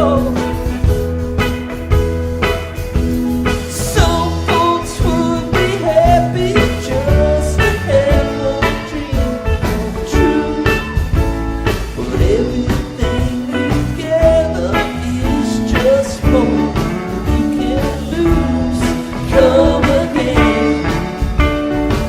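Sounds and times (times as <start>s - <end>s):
live rock band playing: 0.0s - 22.0s.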